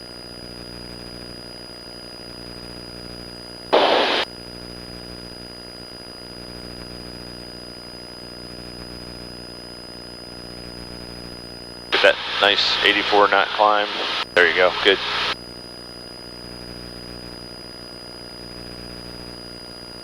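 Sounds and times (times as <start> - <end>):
airplane engine drone: 3.8 - 4.2, 12.0 - 15.4.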